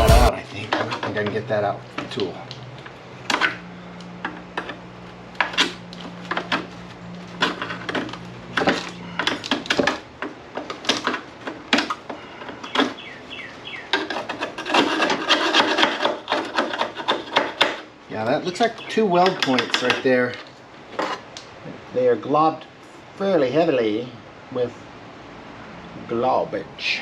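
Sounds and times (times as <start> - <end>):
scraping and clicking on sheet metal: 4.2 - 13.0, 13.8 - 17.9, 18.5 - 21.2.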